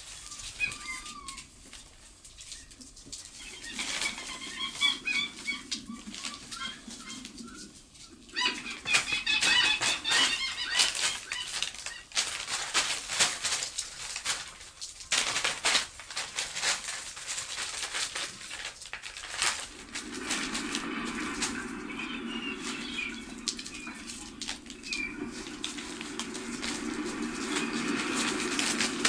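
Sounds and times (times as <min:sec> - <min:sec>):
wings flapping: 0:00.0 - 0:29.0
bird chirping calls: 0:00.2 - 0:01.6, 0:02.5 - 0:12.1, 0:19.8 - 0:29.0
low rush: 0:19.6 - 0:29.0.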